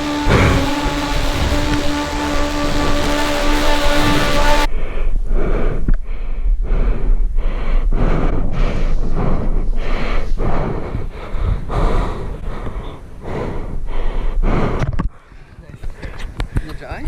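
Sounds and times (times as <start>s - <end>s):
wind rumble on microphone: 0.0s - 4.7s
person breathing hard: 4.8s - 16.8s.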